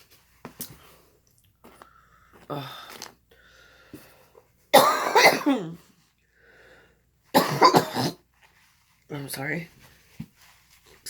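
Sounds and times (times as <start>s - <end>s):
woman coughing hard: 4.7s - 5.8s, 7.4s - 8.2s.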